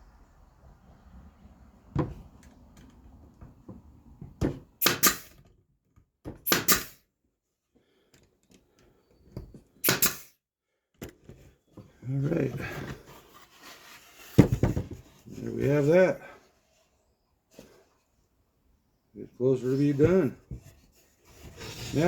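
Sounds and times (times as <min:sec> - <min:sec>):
brad nailer firing: 0:04.8 - 0:05.4, 0:06.4 - 0:07.0, 0:09.8 - 0:10.3
boards being handled: 0:11.1 - 0:15.8, 0:19.7 - 0:22.0.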